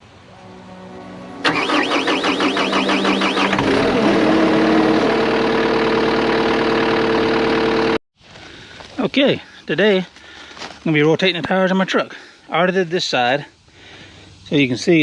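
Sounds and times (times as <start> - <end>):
diesel engine cranking: 1.4 - 8.0
diesel engine idling: 1.4 - 8.0.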